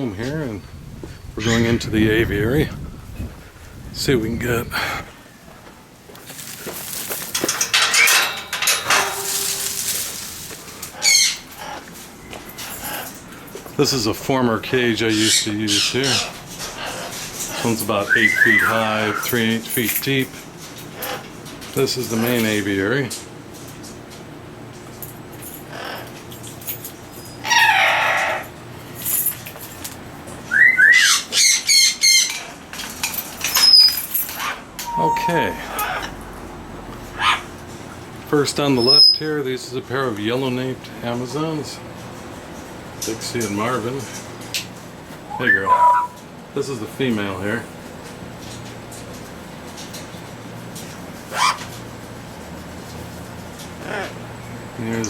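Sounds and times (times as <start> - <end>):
parrots squawking: 1.4 - 1.9, 7.0 - 13.2, 14.8 - 19.4, 25.6 - 26.2, 27.4 - 28.5, 30.5 - 32.6, 33.4 - 36.3, 37.1 - 37.6, 38.8 - 39.3, 45.2 - 46.2, 51.3 - 51.8, 53.8 - 54.3
parrots flapping wings: 6.2 - 11.8
parrot squawk: 10.9 - 11.9, 27.4 - 28.5, 30.5 - 32.5, 33.6 - 36.2, 37.2 - 37.5, 38.8 - 39.2, 45.3 - 46.2, 51.3 - 51.7, 53.8 - 54.2
rising and falling whistles: 18.1 - 18.7, 30.5 - 31.0.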